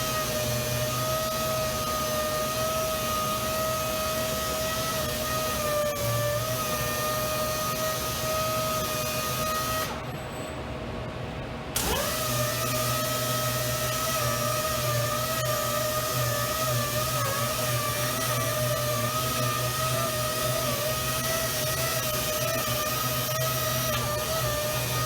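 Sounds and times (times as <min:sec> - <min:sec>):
powered sander whining: 0:00.0 - 0:10.0, 0:11.8 - 0:25.0.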